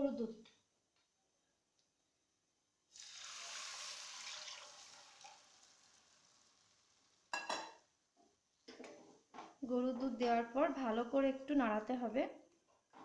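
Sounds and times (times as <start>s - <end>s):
milk sizzling in a hot pan: 2.8s - 8.0s.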